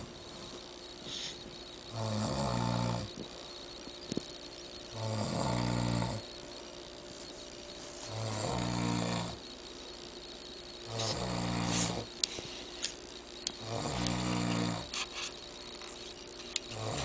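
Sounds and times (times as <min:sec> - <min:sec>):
man snoring: 0:01.9 - 0:03.2, 0:04.9 - 0:06.3, 0:08.1 - 0:09.4, 0:10.9 - 0:12.1, 0:13.6 - 0:15.0, 0:16.7 - 0:17.0.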